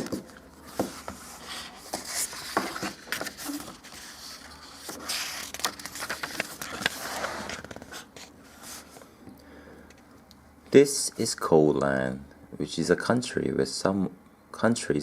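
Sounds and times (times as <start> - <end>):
paper rustling and scraping: 0.0 - 9.0
book pages turning: 0.0 - 9.1.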